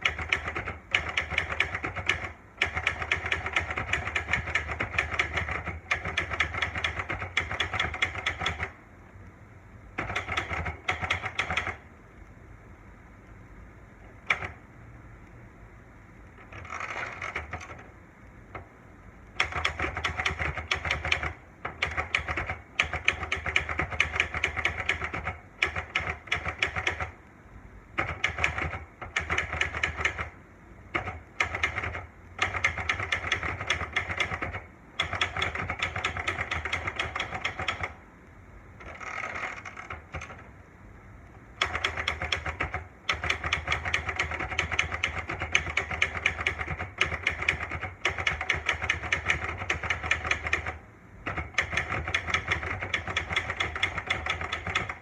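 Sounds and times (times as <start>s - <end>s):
typewriter keys striking: 0.0s - 8.8s, 10.0s - 11.8s, 14.2s - 14.6s, 19.4s - 27.2s, 28.0s - 38.0s, 41.6s - 55.0s.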